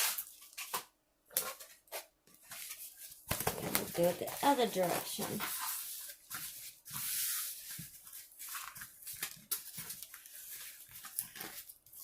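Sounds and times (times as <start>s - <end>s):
canvas crinkly rustling: 2.6s - 6.8s.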